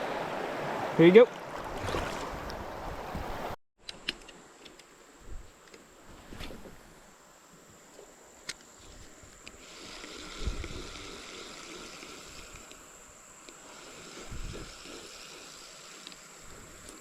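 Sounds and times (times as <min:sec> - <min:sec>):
moving water hiss: 0:04.9 - 0:17.0.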